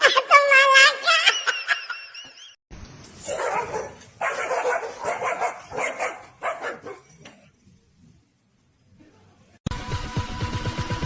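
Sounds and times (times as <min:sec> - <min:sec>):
dog barking: 0:03.2 - 0:07.1.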